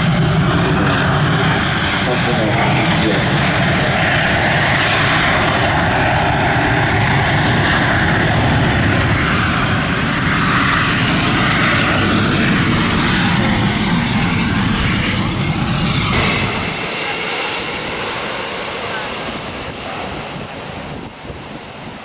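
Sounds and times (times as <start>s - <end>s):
jet engine roar: 0.0s - 22.0s.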